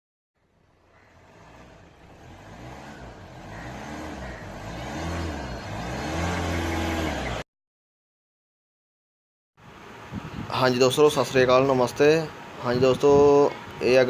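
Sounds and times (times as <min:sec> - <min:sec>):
car engine revving: 0:00.9 - 0:07.4.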